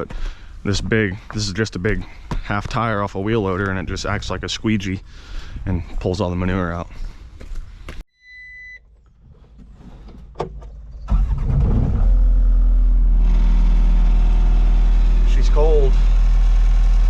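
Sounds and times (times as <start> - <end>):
short warning beep: 8.2 - 8.8
engine cranking and idling: 8.9 - 17.0.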